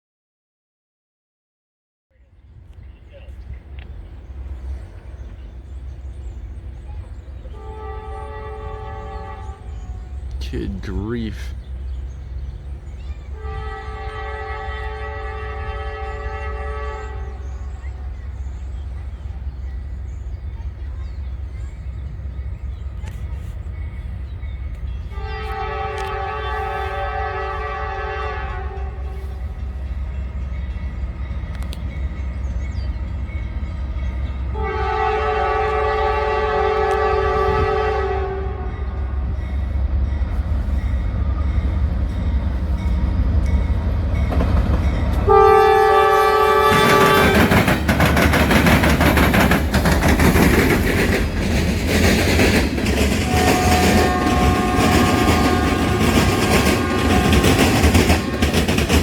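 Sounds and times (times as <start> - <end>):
freight train rumbling past: 2.1 - 59.0
train air horn blasts: 7.5 - 11.0, 13.3 - 17.9, 25.0 - 29.8, 34.5 - 39.7, 45.2 - 47.7, 53.1 - 59.0.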